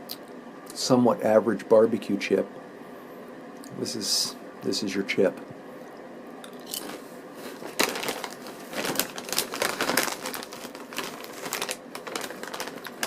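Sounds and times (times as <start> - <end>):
chewing crunchy chips: 6.5 - 7.0.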